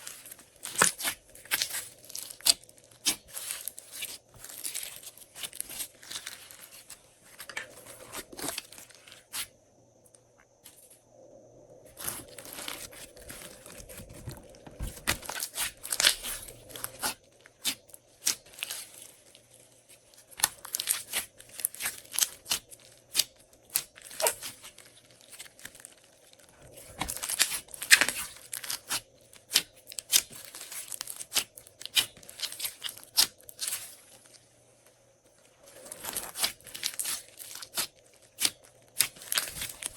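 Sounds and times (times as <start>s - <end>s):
slime squeezed by hand crackling: 20.5s - 24.7s.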